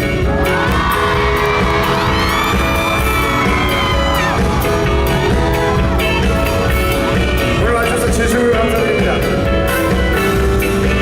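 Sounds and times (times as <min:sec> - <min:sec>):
live pop music with heavy beat: 0:00.0 - 0:11.0
audience screaming: 0:00.4 - 0:07.5.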